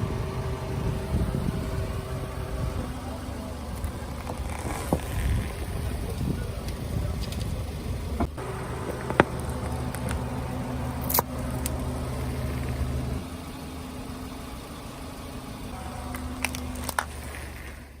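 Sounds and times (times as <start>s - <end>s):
car engine running: 0.0s - 18.0s.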